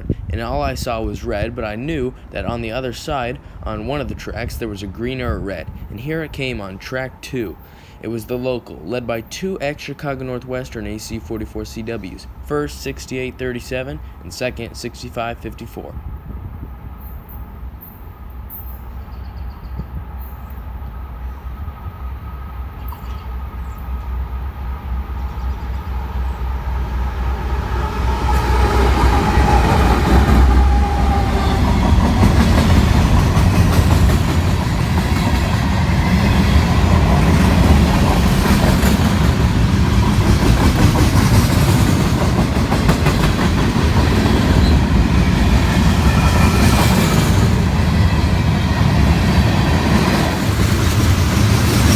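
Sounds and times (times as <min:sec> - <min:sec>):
freight train rumbling: 0:00.0 - 0:51.9
wheels clacking over rail joints: 0:28.2 - 0:51.9.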